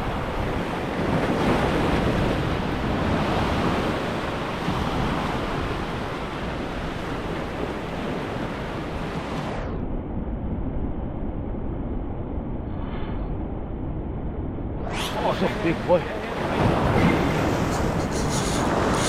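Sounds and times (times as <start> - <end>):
ocean surf breaking: 0.0 - 9.6, 14.8 - 19.0
wind buffeting microphone: 0.0 - 19.0.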